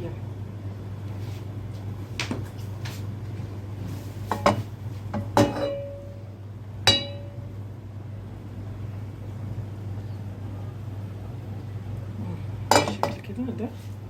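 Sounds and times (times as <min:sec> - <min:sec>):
steady low hum: 0:00.0 - 0:14.0
kitchenware clinking: 0:04.3 - 0:06.2, 0:06.9 - 0:07.4, 0:12.7 - 0:13.3.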